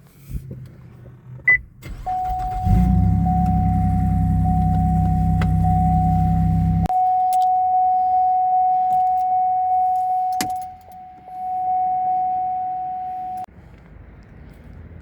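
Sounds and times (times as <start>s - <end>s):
steady electronic tone: 2.6s - 13.5s.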